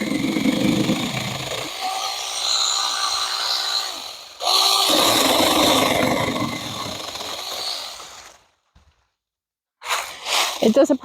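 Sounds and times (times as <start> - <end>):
electric chainsaw cutting wood: 0.0 - 8.6.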